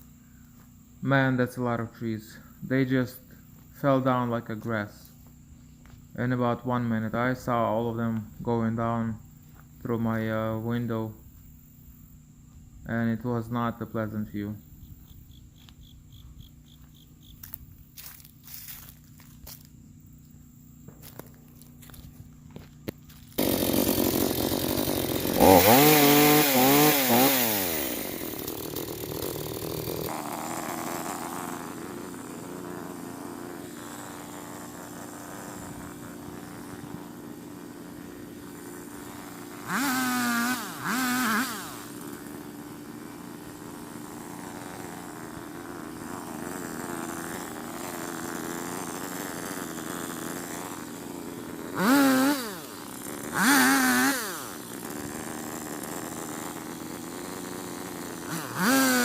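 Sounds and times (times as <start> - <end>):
chainsaw revving and idling: 16.6 - 59.0.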